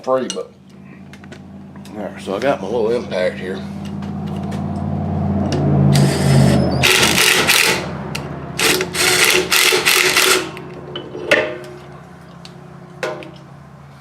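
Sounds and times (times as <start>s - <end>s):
impact wrench hammering: 6.8s - 10.6s.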